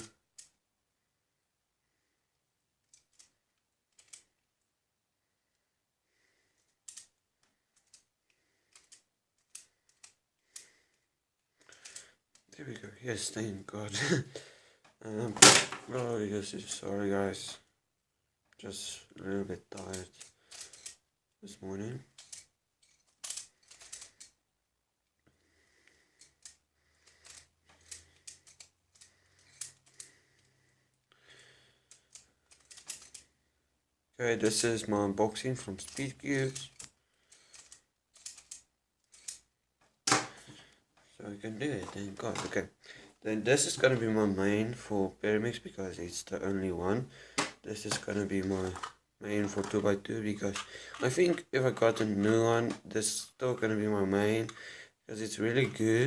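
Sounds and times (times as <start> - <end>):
plastic puzzle pieces clacking: 2.8 - 4.5, 6.6 - 12.6, 19.7 - 21.0, 21.9 - 24.4, 25.9 - 30.4, 31.3 - 33.4, 34.4 - 40.7, 41.6 - 42.7, 47.3 - 52.9, 55.3 - 56.0.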